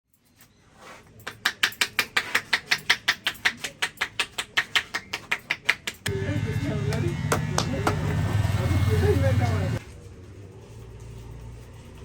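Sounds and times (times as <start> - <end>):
hands tapping on a head: 1.2 - 6.1.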